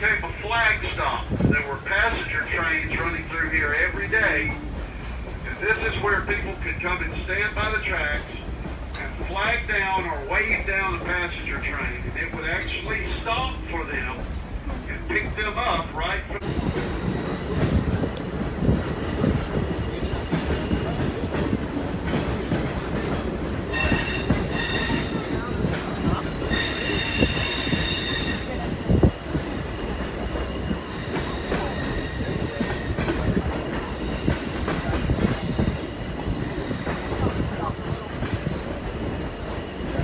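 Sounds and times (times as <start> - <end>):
train rumbling along track: 0.0 - 40.0
train wheels squealing: 23.7 - 25.6, 26.4 - 30.0.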